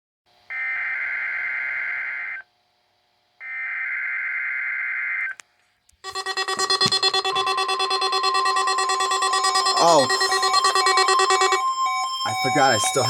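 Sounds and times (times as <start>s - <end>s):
pulsing multi-pitch tone: 6.0s - 13.0s
warbling digital data tones: 6.1s - 13.0s.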